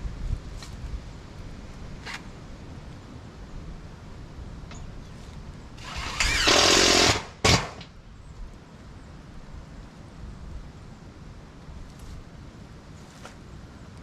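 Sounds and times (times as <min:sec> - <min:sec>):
power drill running: 0:05.8 - 0:07.8.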